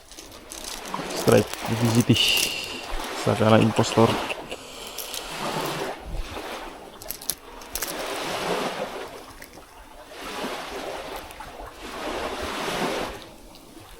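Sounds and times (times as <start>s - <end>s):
small waves washing on shore: 0.0s - 13.9s.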